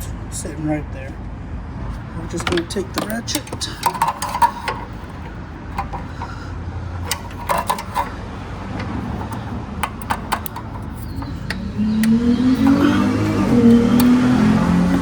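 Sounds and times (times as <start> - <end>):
socket ratchet clicking: 7.0 - 14.3.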